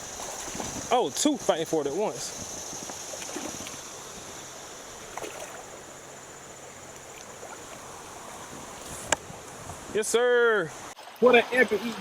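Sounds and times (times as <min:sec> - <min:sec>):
faint knocks or splashes: 0:00.0 - 0:00.9, 0:02.8 - 0:03.8, 0:05.0 - 0:05.9
flowing river water: 0:00.0 - 0:12.0.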